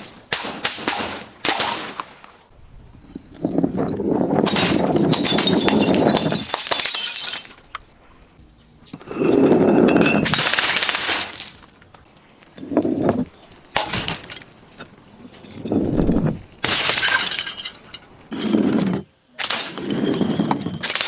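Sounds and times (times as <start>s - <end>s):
glass bottle crushing and shattering: 3.0s - 7.9s, 9.4s - 11.8s, 13.8s - 14.7s, 16.6s - 21.0s.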